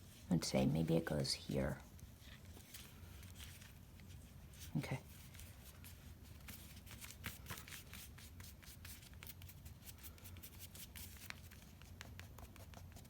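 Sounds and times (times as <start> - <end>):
paper rustling and tapping: 6.4 - 13.0.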